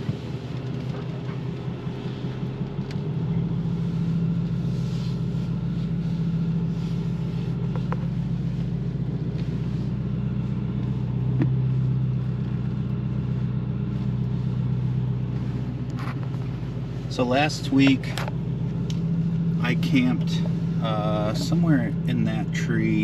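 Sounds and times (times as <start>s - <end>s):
pickup truck engine under load: 0.0s - 23.0s.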